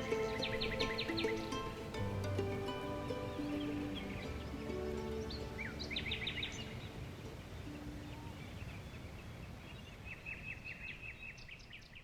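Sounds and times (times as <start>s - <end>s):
low outdoor rumble: 0.0s - 8.3s
small birds chirping: 0.0s - 12.0s.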